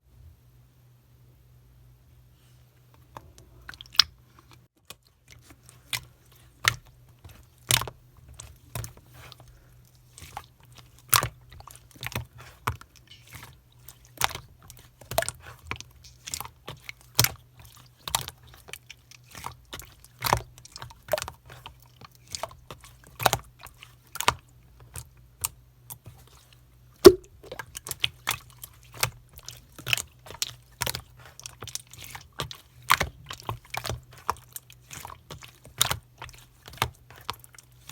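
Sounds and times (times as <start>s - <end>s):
slime clicks and pops: 27.1s - 27.6s.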